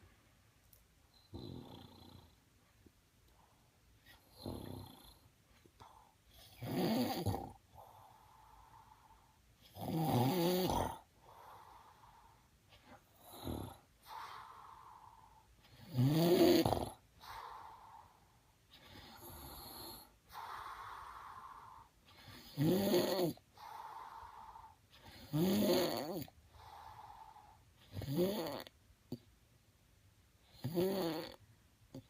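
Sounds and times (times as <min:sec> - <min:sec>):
loud snoring: 0:01.3 - 0:02.4, 0:04.1 - 0:05.3, 0:06.3 - 0:08.3, 0:09.7 - 0:11.4, 0:13.2 - 0:14.6, 0:15.7 - 0:17.6, 0:18.8 - 0:26.9, 0:27.9 - 0:28.7, 0:30.6 - 0:31.4
soft breathing: 0:02.0 - 0:06.6, 0:07.5 - 0:09.8, 0:11.0 - 0:15.8, 0:17.0 - 0:22.5, 0:23.4 - 0:25.3, 0:26.3 - 0:28.0.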